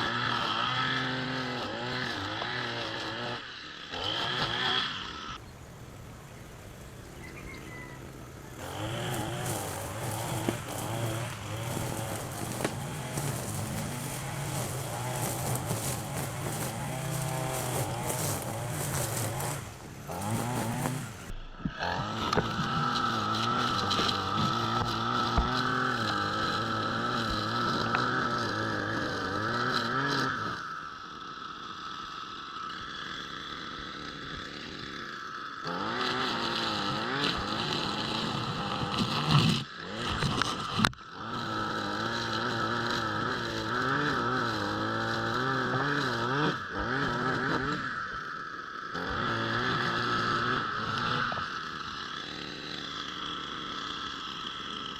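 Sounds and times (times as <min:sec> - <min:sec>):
small petrol engine running: 0:00.0 - 0:54.9.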